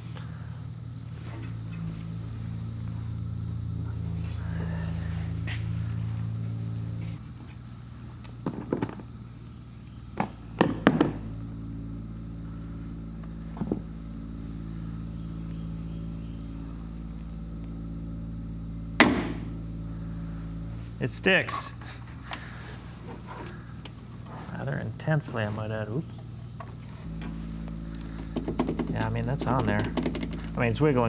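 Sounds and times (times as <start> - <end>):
low electrical hum: 0.0 - 31.0
metal parts clanking: 28.4 - 30.6.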